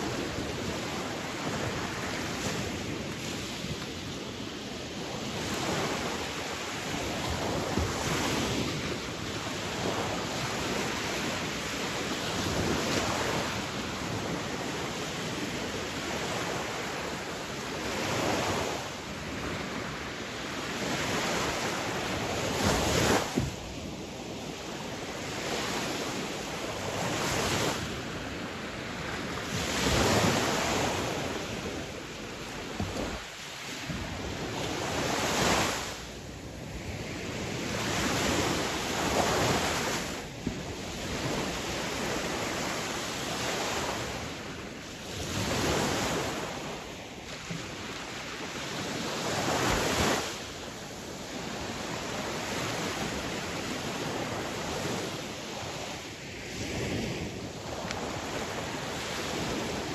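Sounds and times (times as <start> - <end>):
sea waves breaking: 0.0 - 59.9.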